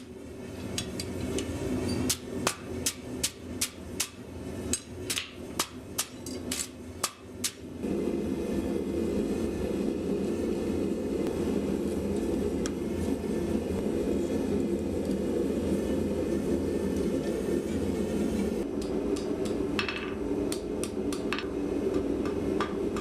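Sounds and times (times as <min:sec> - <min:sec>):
forge rushing noise: 0:07.8 - 0:18.7.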